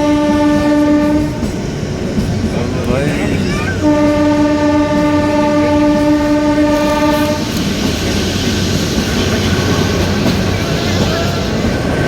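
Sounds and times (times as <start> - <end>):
train horn: 0.0 - 1.5, 3.8 - 7.7
train rumbling and rattling: 0.0 - 12.0.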